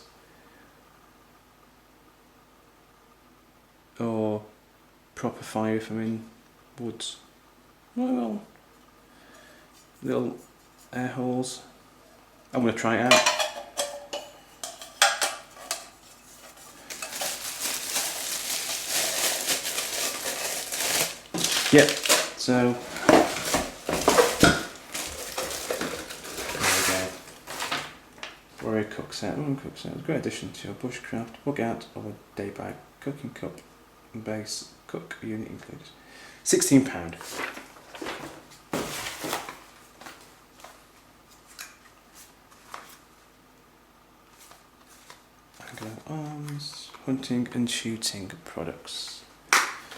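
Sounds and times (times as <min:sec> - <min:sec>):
metal cook set clinking: 0:13.1 - 0:15.9
steady rustle: 0:15.5 - 0:28.0.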